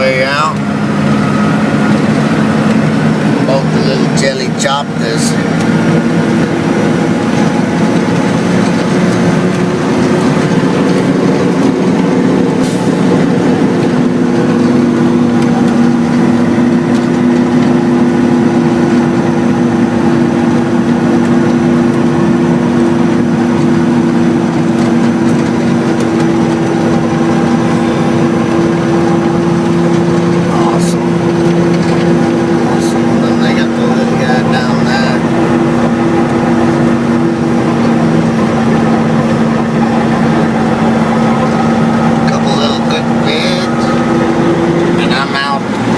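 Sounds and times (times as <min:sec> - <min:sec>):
helicopter drone: 0:00.0 - 0:45.9.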